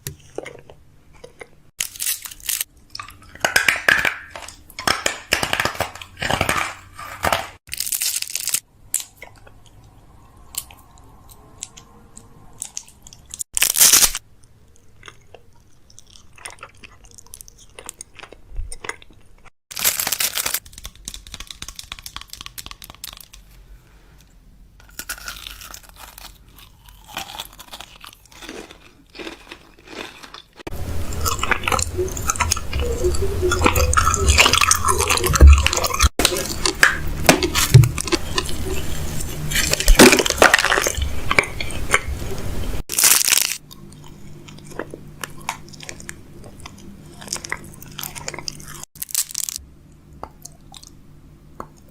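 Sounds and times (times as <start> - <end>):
continuous crackling noise: 19.4 - 24.3
crunchy snack chewing: 24.8 - 42.1, 42.9 - 49.6.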